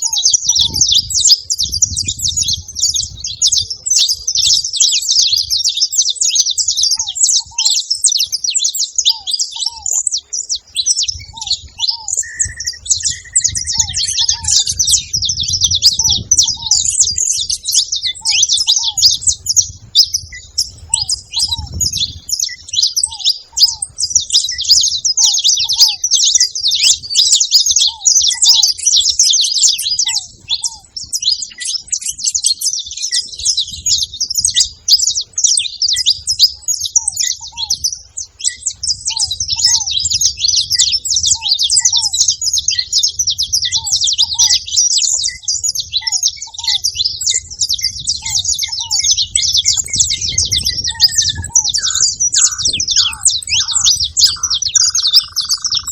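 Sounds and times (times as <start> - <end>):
finches twittering: 0.0 - 55.9
drawn-out bird whistle: 4.6 - 28.9, 38.4 - 55.9
lower paired bird notes: 9.0 - 27.2, 47.5 - 55.9.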